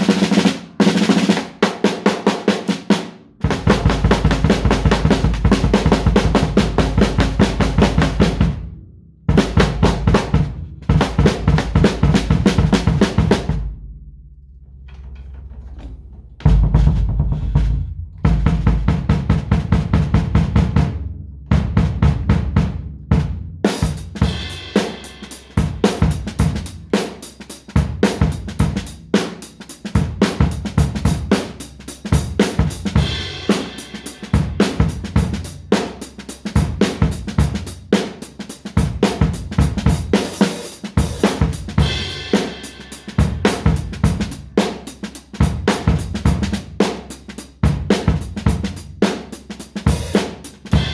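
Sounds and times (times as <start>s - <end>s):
drum kit playing: 0.0s - 8.7s, 9.3s - 13.7s, 14.6s - 50.9s.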